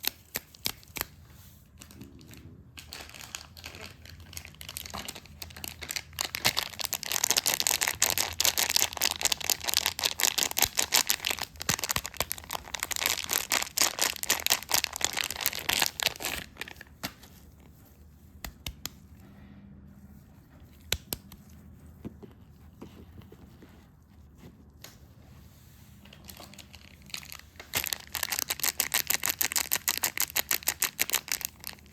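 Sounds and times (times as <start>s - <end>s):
wrapping crinkling and tearing: 0.0s - 18.0s, 26.0s - 31.9s.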